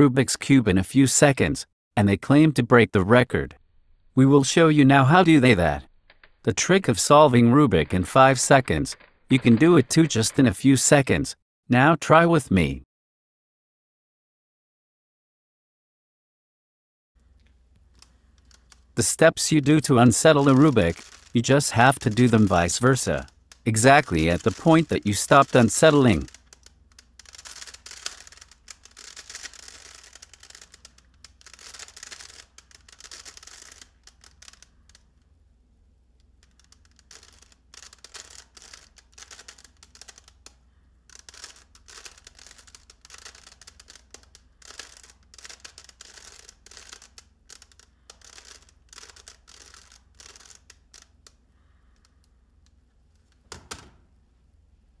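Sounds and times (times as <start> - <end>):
rubik's cube clicking: 17.5 - 19.0, 20.1 - 35.2, 36.2 - 51.4.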